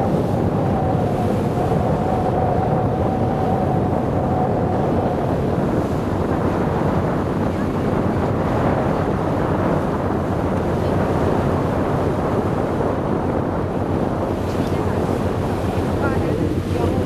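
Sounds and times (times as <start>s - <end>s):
sea water rushing: 0.0s - 17.0s
wind buffeting microphone: 0.0s - 17.0s
boat engine running: 4.8s - 17.0s.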